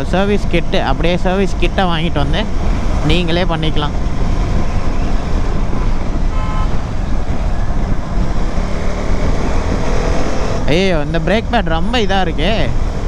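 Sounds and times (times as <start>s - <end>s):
wind and motorcycle road noise: 0.0s - 13.0s
short horn toot: 6.3s - 6.8s.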